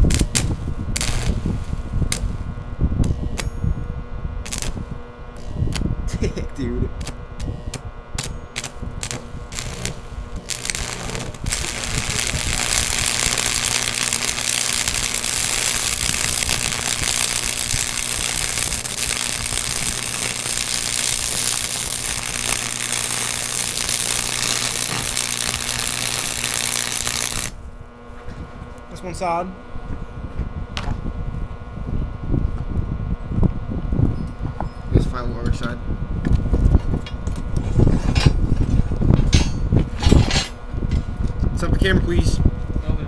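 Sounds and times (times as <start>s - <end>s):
arc welding crackle: 0.0s - 3.6s, 4.4s - 29.6s
low electrical hum: 0.0s - 43.0s.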